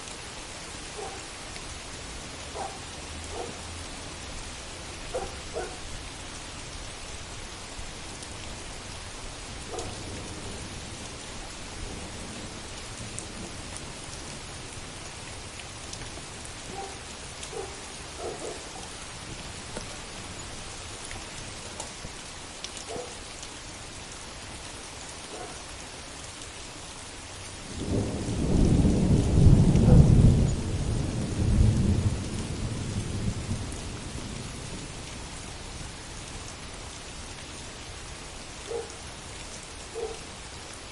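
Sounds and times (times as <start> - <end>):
heavy rain falling: 0.0 - 40.9
deep thunder rumbling: 27.8 - 34.5.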